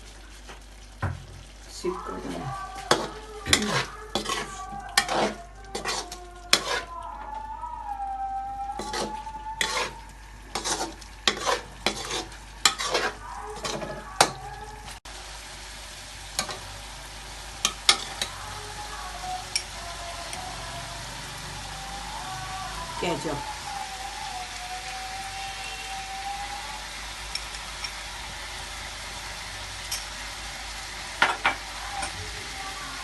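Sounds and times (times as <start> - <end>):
frying hiss: 0.0 - 33.0
spoon scraping in a pan: 2.7 - 7.0, 8.7 - 14.5, 17.6 - 18.4.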